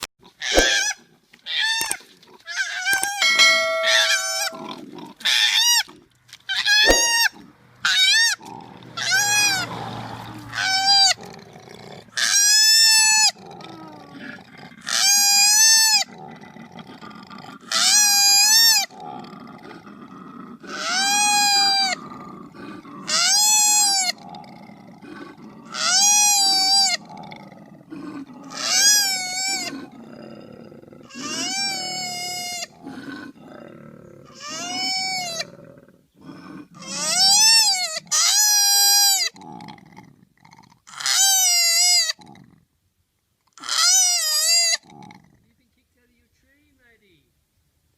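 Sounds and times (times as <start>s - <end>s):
koala wailing squeals: 0.4s - 4.6s, 9.0s - 11.2s, 14.9s - 16.1s, 17.7s - 18.9s, 20.7s - 22.0s, 23.1s - 24.2s, 25.7s - 27.0s, 28.5s - 29.8s, 31.1s - 32.7s, 34.3s - 35.5s, 36.8s - 39.4s, 40.9s - 42.2s, 43.6s - 44.8s
koala grunting: 8.4s - 12.3s, 13.1s - 41.4s.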